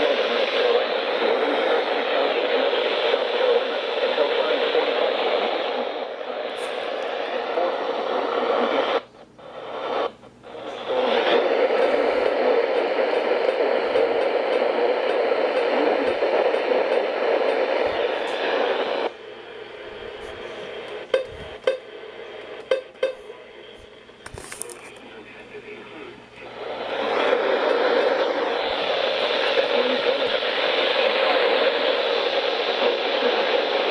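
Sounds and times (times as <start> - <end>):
radio static hiss: 0.0 - 33.9.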